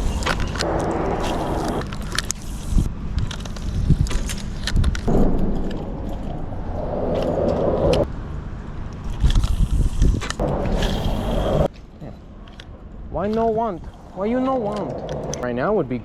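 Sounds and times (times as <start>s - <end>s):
wind rumble on microphone: 0.0s - 11.7s.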